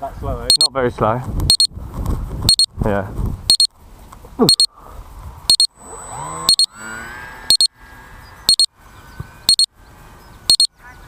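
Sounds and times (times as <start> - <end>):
electronic alarm double beeps: 0.5 - 0.7, 1.5 - 1.7, 2.5 - 2.7, 3.5 - 3.7, 4.5 - 4.7, 5.5 - 5.7, 6.5 - 6.7, 7.5 - 7.7, 8.5 - 8.7, 9.5 - 9.7, 10.5 - 10.7
electric motor whine rising: 5.7 - 9.5.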